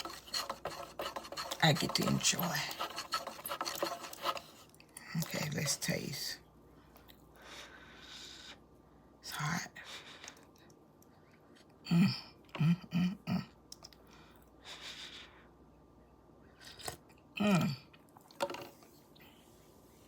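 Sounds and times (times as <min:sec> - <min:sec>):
woman humming: 0:11.8 - 0:13.5, 0:17.4 - 0:17.8.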